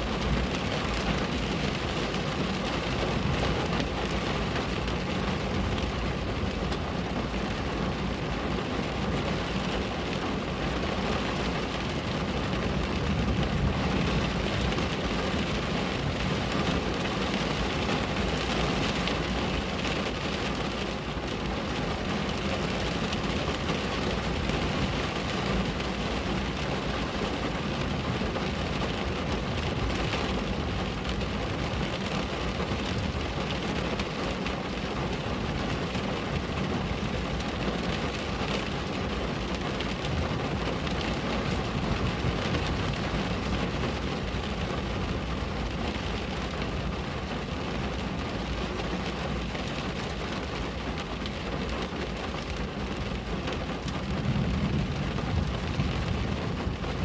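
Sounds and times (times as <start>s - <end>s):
rain on a window: 0.0s - 57.0s.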